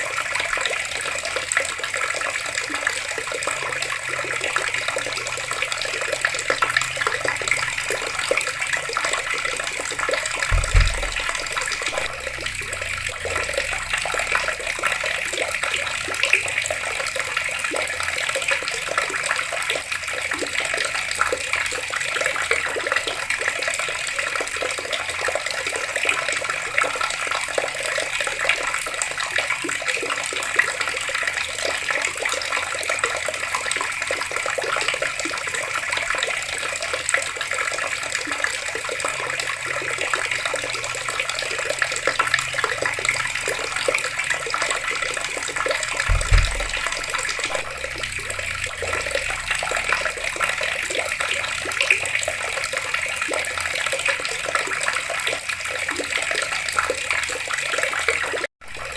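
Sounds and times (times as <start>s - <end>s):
water running from taps: 0.0s - 58.9s
low thump: 10.5s - 13.8s, 46.0s - 49.0s.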